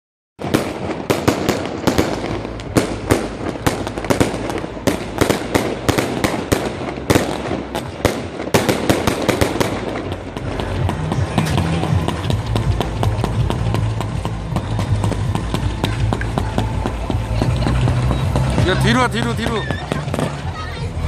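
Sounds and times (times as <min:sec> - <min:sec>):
crackling rumble: 0:00.4 - 0:21.0
firework bangs: 0:00.4 - 0:21.0.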